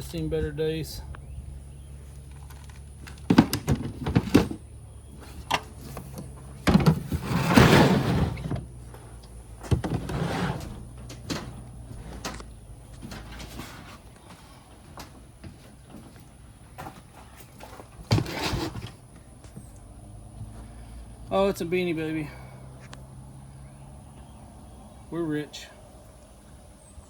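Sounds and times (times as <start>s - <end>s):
objects knocking and clattering: 2.3s - 4.6s, 5.5s - 8.7s
rustling scrape: 6.9s - 9.1s, 9.9s - 12.4s, 13.0s - 14.6s, 17.6s - 19.0s.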